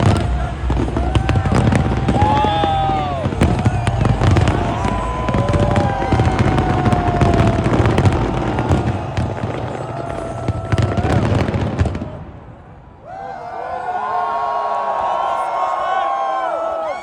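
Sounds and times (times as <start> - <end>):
fireworks bangs and crackling: 0.0 - 12.9
crowd shouting and whistling: 0.0 - 17.0.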